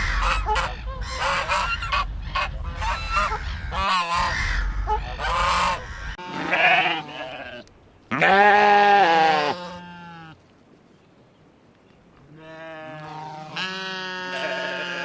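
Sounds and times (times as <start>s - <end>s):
sheep bleating: 6.2s - 10.4s, 12.3s - 15.0s.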